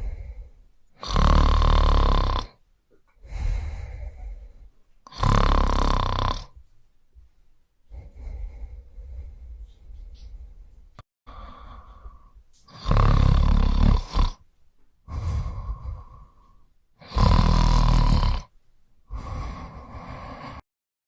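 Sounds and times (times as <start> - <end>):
person snoring: 0.0 - 2.6, 3.2 - 4.5, 5.1 - 6.6, 7.9 - 9.8, 11.3 - 14.4, 15.1 - 18.5, 19.1 - 20.6.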